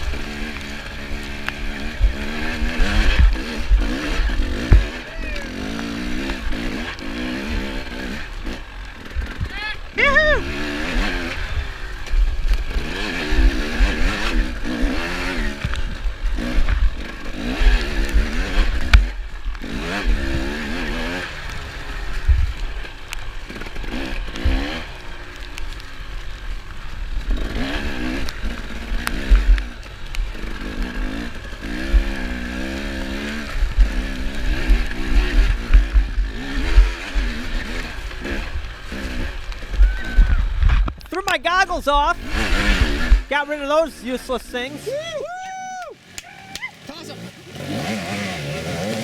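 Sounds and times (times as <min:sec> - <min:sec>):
dirt bike engine revving: 0:00.0 - 0:49.0
low thumps: 0:01.9 - 0:05.0.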